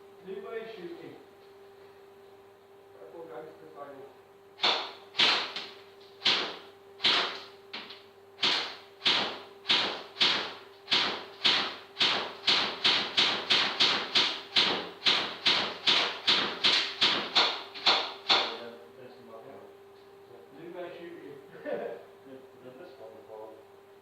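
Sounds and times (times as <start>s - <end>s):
airsoft gun shots: 4.6s - 7.5s, 8.4s - 18.6s.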